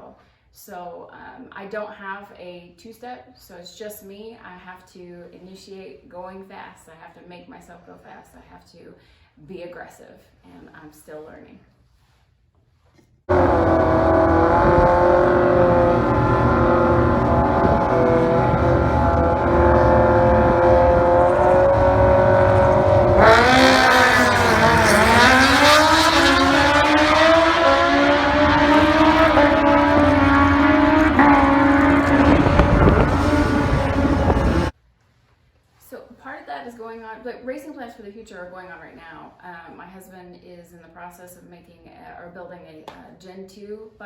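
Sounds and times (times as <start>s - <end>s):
motorcycle engine running loud: 13.3s - 34.7s.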